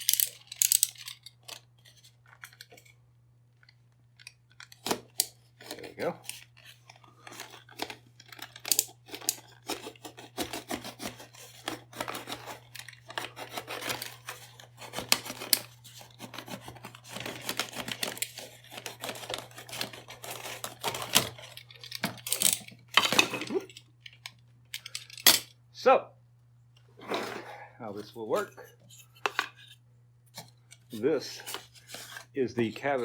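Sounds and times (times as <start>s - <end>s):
knife scraping through a pipe: 8.7s - 21.5s, 30.4s - 33.0s.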